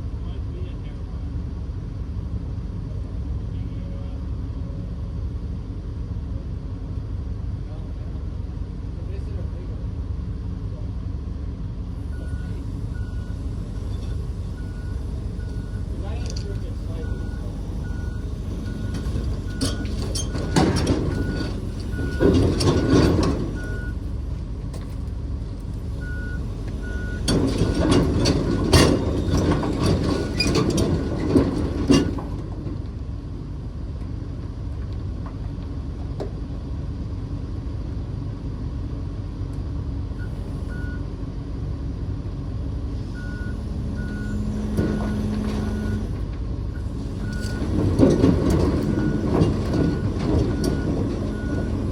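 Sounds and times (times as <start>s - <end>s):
excavator diesel engine running: 0.0s - 51.9s
clanking and track rattle: 12.1s - 33.1s, 43.0s - 51.9s
travel alarm beeping: 26.0s - 27.8s.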